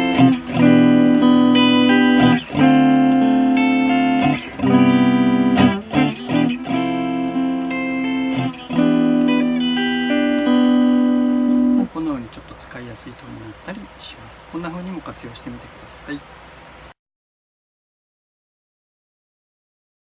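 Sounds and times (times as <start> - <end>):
electric guitar strummed chords: 0.0 - 11.9.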